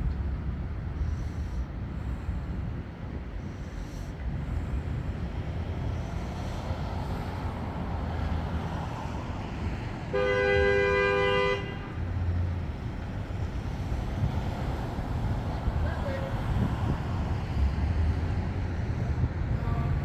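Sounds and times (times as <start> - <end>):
street traffic rumbling: 0.0 - 20.0
car horn two-tone blast: 10.1 - 12.0.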